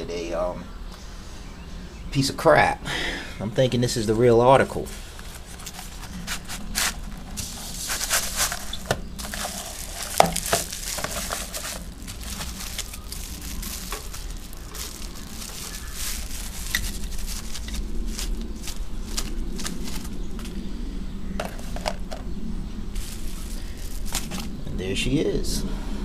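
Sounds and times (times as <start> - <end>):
paper crinkling and tearing: 4.9 - 20.6, 23.0 - 24.5.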